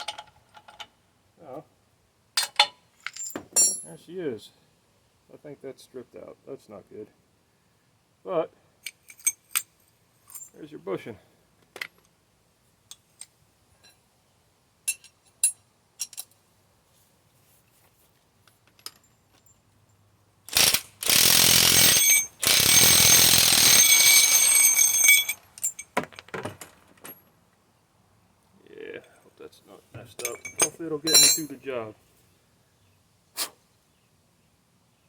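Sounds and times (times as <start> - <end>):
metal tool parts clinking: 2.4 - 3.9, 8.8 - 10.6, 14.9 - 16.4, 21.7 - 27.2, 30.1 - 31.6
impact wrench hammering: 20.5 - 25.3.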